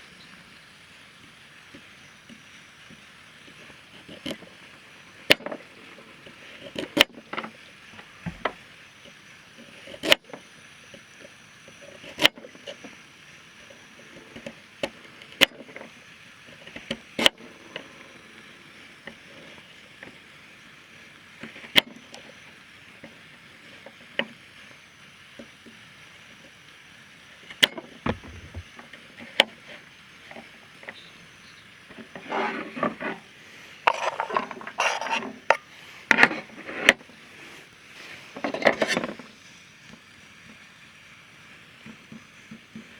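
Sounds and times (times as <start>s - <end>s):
faint steady hiss: 0.0s - 42.9s
campfire crackling and popping: 28.1s - 28.7s
rustling and knocking handling: 28.1s - 28.7s.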